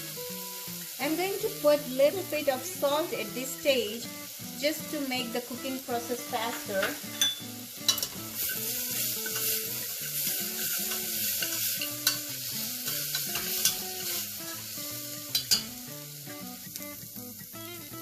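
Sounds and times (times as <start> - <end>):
onions sizzling in oil: 0.0 - 18.0
spoon clicking against pot: 6.9 - 8.5, 10.9 - 13.8, 15.3 - 15.8.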